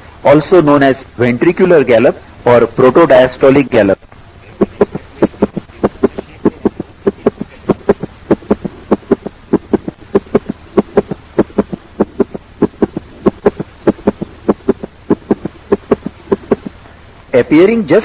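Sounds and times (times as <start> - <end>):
heartbeat in gallop rhythm: 4.6 - 16.8.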